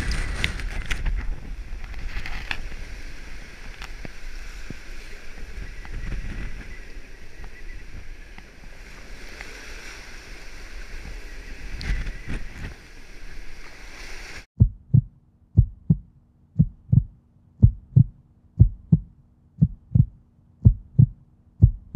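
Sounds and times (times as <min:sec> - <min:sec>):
wind and water noise: 0:00.0 - 0:21.9
heartbeat-like double thump: 0:14.6 - 0:21.9.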